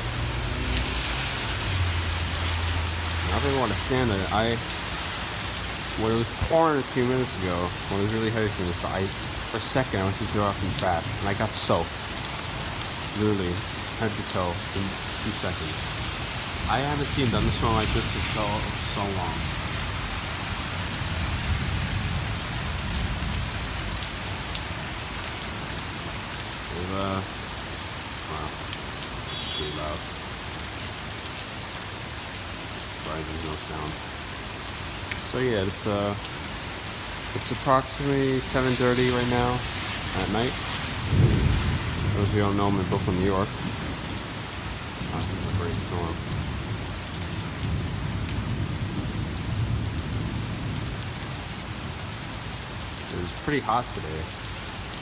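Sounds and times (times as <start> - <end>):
rain hissing: 0.0 - 55.0
low thunder rumble: 16.5 - 20.2, 40.8 - 44.4
low rumble of thunder: 16.6 - 24.0, 40.7 - 51.8.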